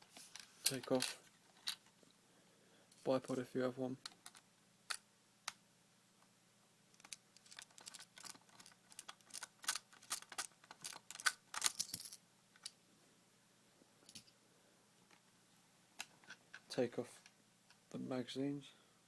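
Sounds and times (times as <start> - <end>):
sharp clicks and rattles: 7.0 - 12.7
small parts knocking: 7.0 - 12.7.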